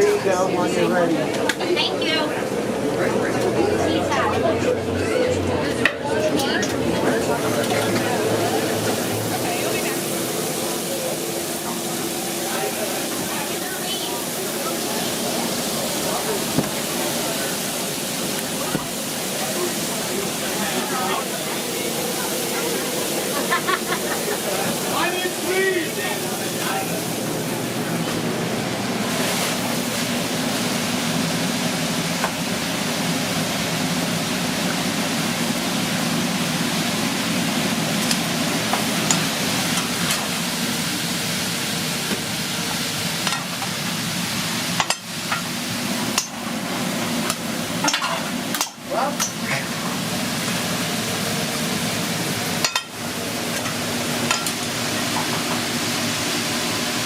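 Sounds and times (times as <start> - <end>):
steak sizzling in a pan: 8.8 - 27.8.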